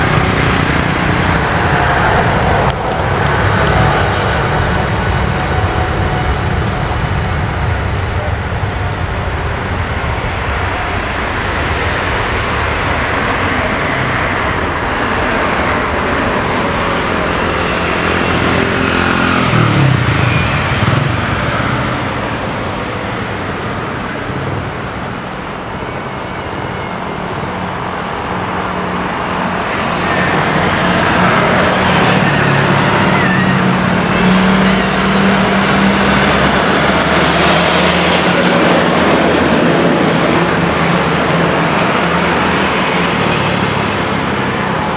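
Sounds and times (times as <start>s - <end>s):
vehicle passing: 0.0s - 23.9s, 28.8s - 44.9s
road traffic noise: 0.0s - 44.9s.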